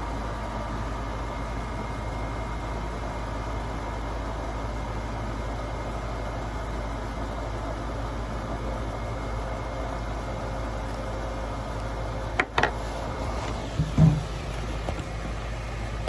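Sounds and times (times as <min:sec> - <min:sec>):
sharp knocks: 0:13.8 - 0:14.4.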